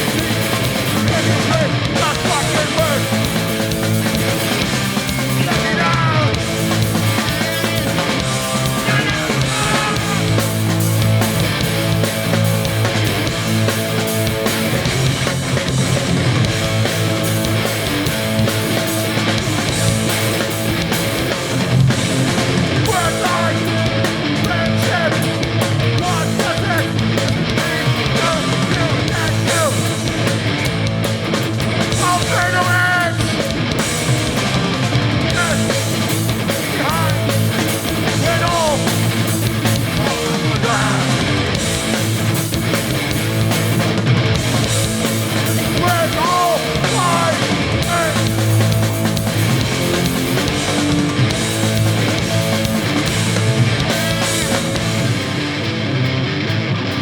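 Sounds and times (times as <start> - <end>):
punk band playing live: 0.0 - 57.0.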